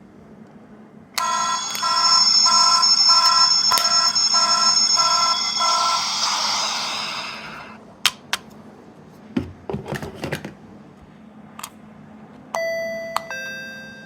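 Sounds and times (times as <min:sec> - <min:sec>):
electronic toy alarm: 0:01.2 - 0:07.8.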